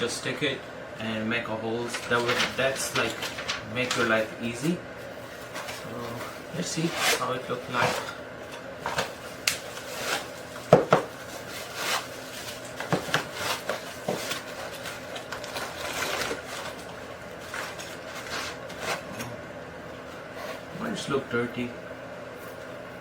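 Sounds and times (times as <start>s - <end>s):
cardboard packaging rubbing: 5.0s - 8.2s, 8.8s - 19.2s.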